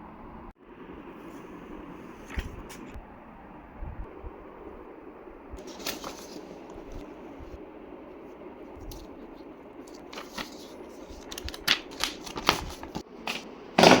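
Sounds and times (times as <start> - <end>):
packaging rustling and clicks: 9.9 - 14.0.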